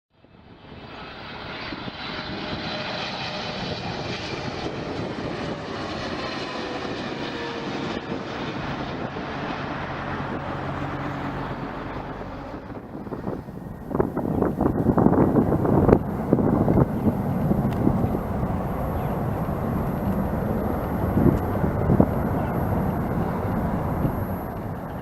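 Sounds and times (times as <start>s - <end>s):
airliner engines passing: 0.2s - 25.0s
faint engine whine: 0.2s - 25.0s.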